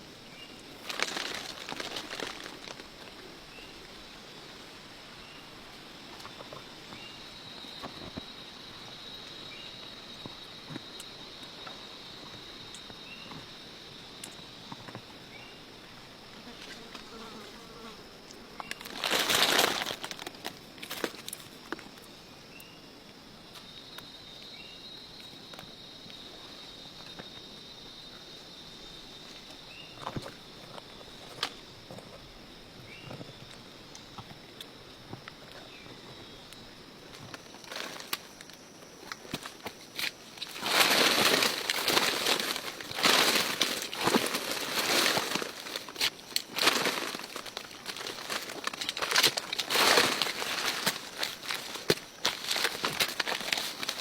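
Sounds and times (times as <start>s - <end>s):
insects chirring: 0.0s - 54.0s
loud rustle: 40.0s - 54.0s.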